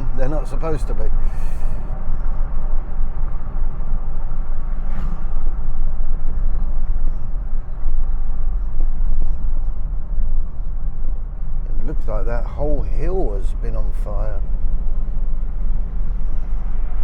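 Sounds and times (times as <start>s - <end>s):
car engine and road rumble: 0.0s - 17.0s.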